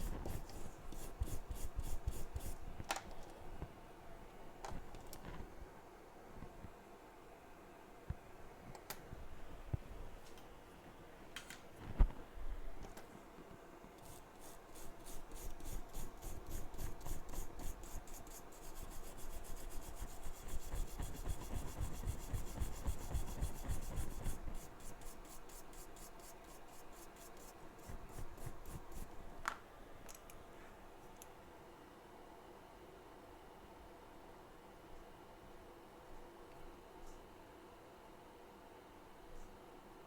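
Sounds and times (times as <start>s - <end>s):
small brush scrubbing circuit board: 0.0s - 2.6s, 14.0s - 29.1s.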